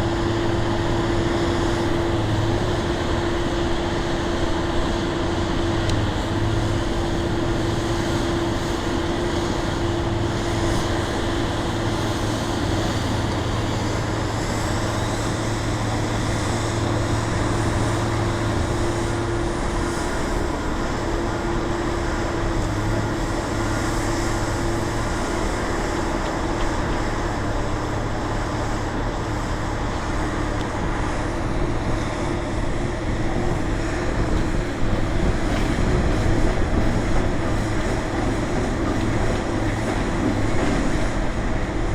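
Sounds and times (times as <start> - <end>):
heavy machinery engine drone: 0.0 - 41.9.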